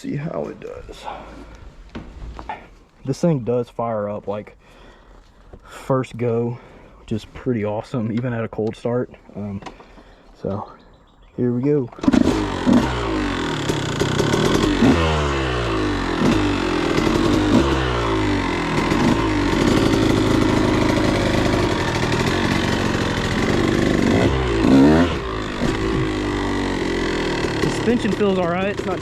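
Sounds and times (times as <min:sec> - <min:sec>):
two-stroke motorcycle engine revving: 0:12.0 - 0:29.0.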